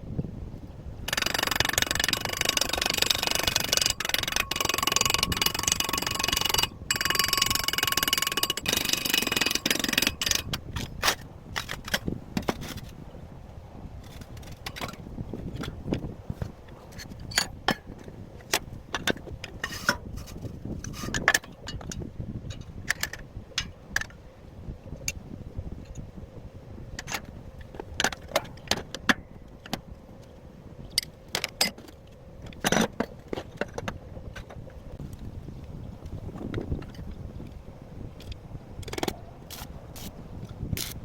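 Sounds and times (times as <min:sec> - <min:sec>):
metal tools clinking: 0:01.1 - 0:10.9.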